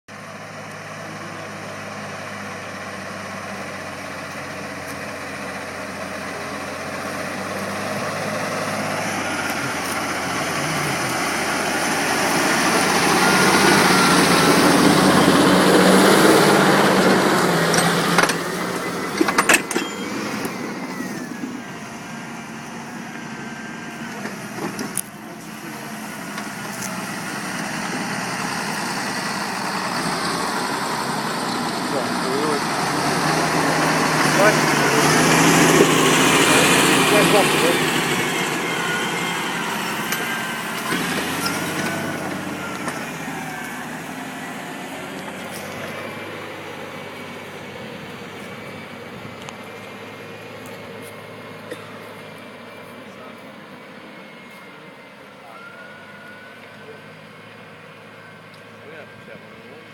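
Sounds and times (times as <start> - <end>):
tractor diesel engine under load: 0.0 - 59.9.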